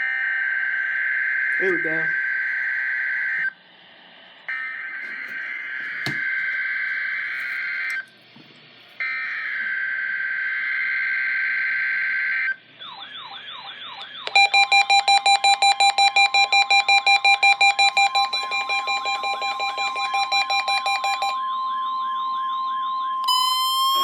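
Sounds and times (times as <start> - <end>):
warbling siren-like alarm tone: 0.0 - 3.6, 4.5 - 8.1, 16.0 - 24.0
rapid electronic beeping: 14.3 - 24.0
steady electronic tone: 16.4 - 24.0.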